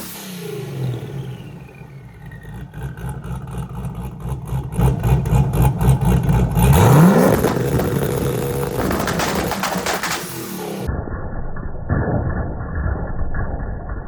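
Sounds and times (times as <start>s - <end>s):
car engine choppy idle: 0.0s - 10.9s.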